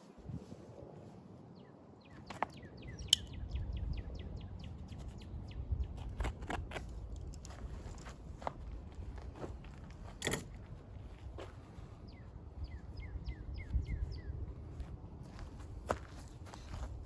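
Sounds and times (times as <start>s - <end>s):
bird chirping: 1.6s - 6.2s, 12.0s - 14.4s.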